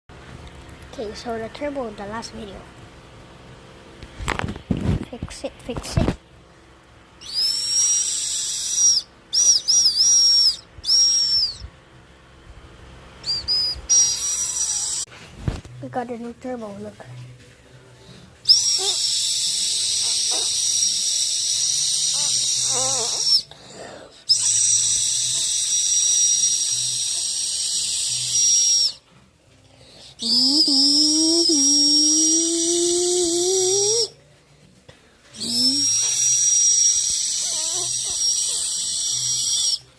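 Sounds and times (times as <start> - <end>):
high-pitched turbo whistles: 7.2 - 11.7, 13.2 - 15.1, 18.4 - 23.5, 24.3 - 29.0, 30.0 - 34.2, 35.3 - 39.9.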